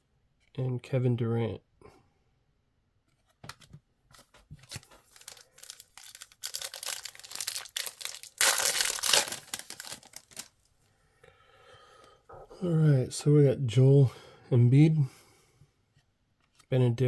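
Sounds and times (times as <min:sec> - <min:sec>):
wrapper crinkling and tearing: 0:04.6 - 0:10.5.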